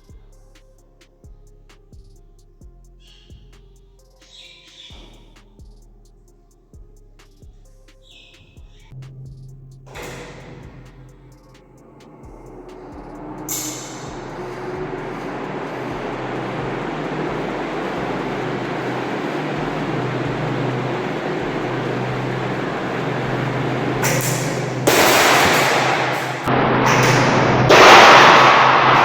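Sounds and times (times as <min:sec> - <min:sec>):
ceiling fan hum and whoosh: 0:09.0 - 0:29.0
loud noisy burst: 0:12.2 - 0:29.0.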